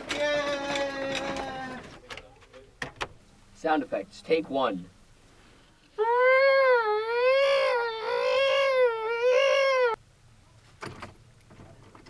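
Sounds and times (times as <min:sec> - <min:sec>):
person wailing: 0:06.0 - 0:10.0.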